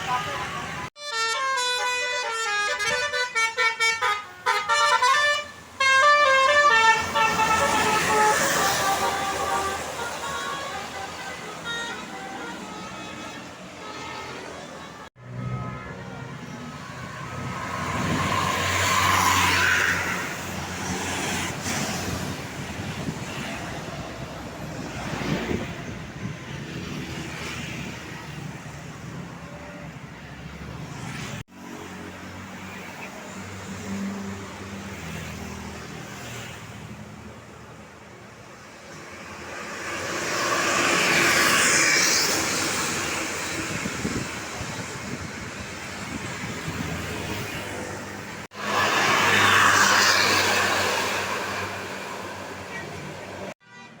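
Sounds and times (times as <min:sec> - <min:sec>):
buses passing close by: 0:00.0 - 0:54.0.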